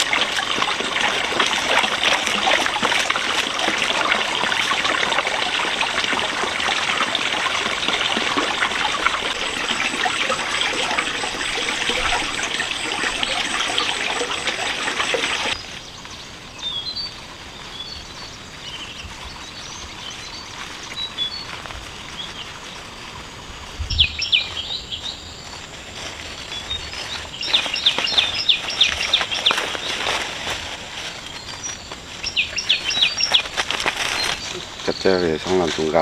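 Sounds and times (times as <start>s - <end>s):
water running: 0.0s - 15.6s, 26.4s - 36.0s
birds chirping: 0.0s - 22.6s, 23.9s - 36.0s.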